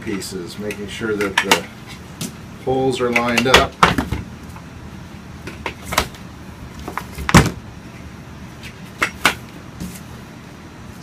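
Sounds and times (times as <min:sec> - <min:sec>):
chair parts knocking together: 0:07.1 - 0:07.6.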